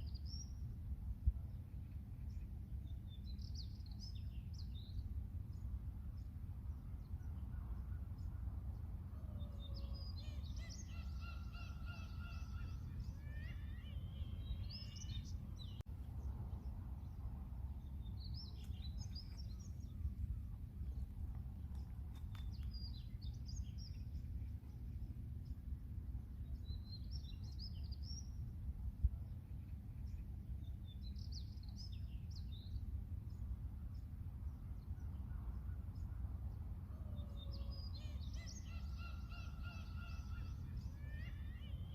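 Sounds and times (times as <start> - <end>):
seagulls calling: 10.4 - 14.1.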